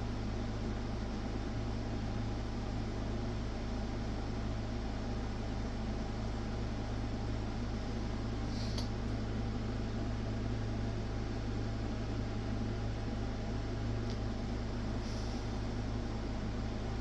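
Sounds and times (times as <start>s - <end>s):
steady low hum: 0.0s - 17.0s
faint short clicks: 8.7s - 8.9s.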